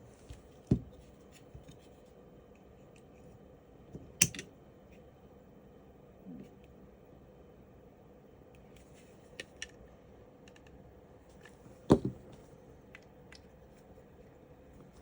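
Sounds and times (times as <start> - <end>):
pistol parts clicking: 4.2 - 4.4.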